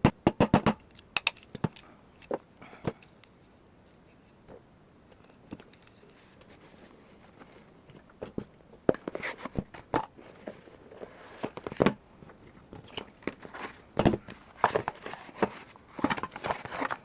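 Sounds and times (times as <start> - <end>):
gun parts clicking and knocking: 0.7 - 3.1.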